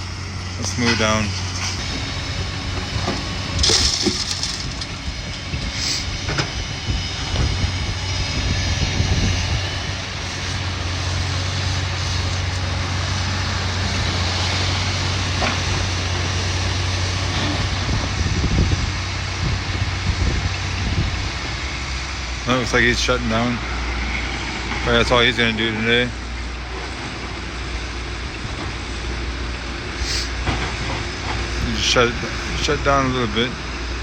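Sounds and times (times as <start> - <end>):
diesel machine engine running: 0.0 - 34.0.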